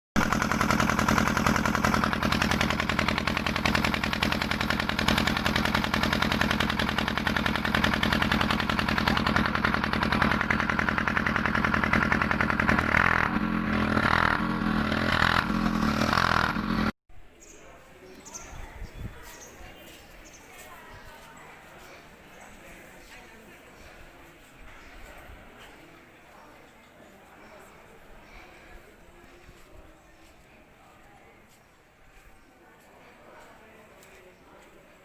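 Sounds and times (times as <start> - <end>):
engine running with rapid rattle: 0.2 - 17.0.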